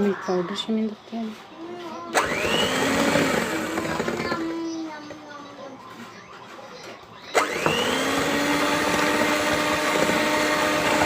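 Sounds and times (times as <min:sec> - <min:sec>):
electric mixer motor running: 0:02.1 - 0:04.7, 0:07.3 - 0:11.0.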